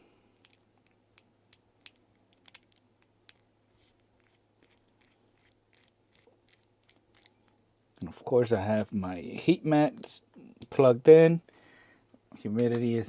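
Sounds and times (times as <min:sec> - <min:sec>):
faint small clicks and taps: 0:00.4 - 0:05.2, 0:12.6 - 0:12.9.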